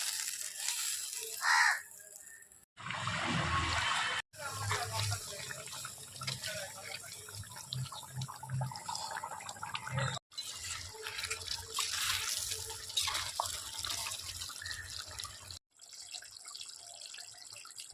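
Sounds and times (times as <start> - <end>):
tap water running: 4.4 - 17.9.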